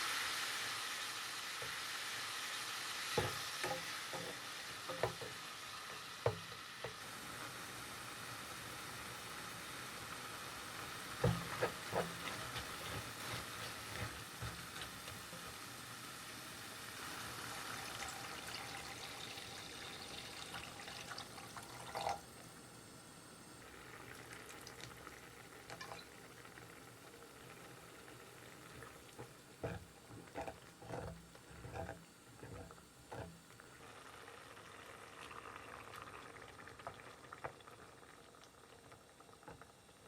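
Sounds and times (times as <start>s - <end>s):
food sizzling in a pan: 0.0s - 40.0s
utensil knocking and scraping pan: 3.2s - 7.0s, 11.2s - 15.6s, 29.2s - 33.4s.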